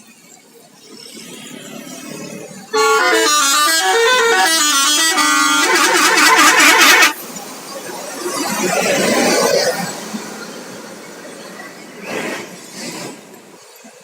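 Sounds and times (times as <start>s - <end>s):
bus noise: 0.7s - 14.0s
musical air horn tune: 2.8s - 7.2s.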